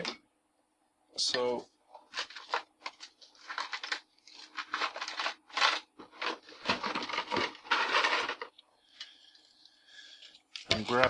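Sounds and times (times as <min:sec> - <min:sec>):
rustling and scraping handling: 0:01.4 - 0:11.0.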